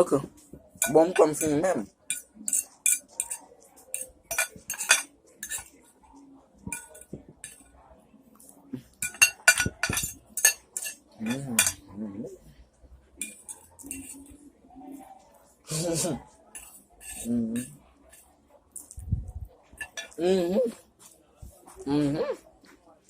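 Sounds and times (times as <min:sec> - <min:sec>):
cutlery clinking on a plate: 0:00.6 - 0:05.8, 0:06.6 - 0:07.8, 0:08.9 - 0:11.9, 0:13.2 - 0:14.3, 0:16.5 - 0:18.2, 0:19.8 - 0:20.2.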